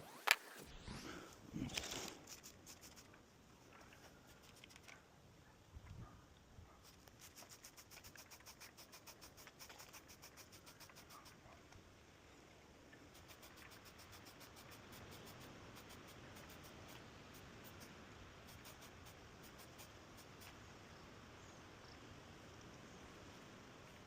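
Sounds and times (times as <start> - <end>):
handling rustle: 0.0 - 5.1.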